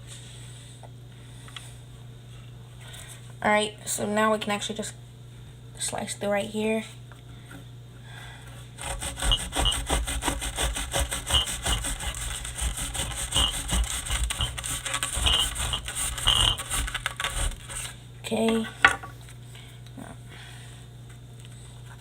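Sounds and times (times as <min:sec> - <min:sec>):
blade sawing through paper casing: 0:08.8 - 0:18.0.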